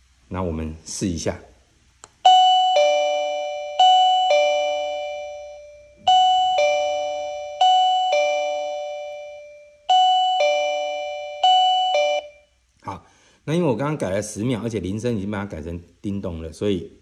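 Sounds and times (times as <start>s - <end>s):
ding-dong chime: 2.2s - 12.4s.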